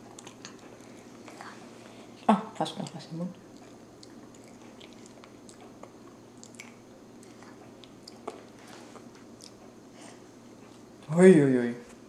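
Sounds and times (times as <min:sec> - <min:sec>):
toddler chewing: 0:00.0 - 0:01.5, 0:03.5 - 0:09.7
wet mouth clicks and smacks: 0:03.5 - 0:08.6.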